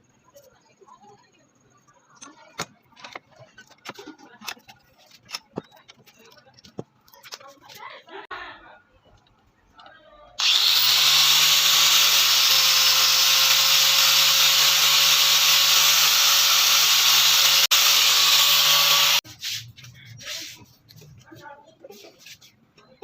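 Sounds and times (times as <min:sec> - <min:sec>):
electric power tool grinding: 0:10.4 - 0:19.2.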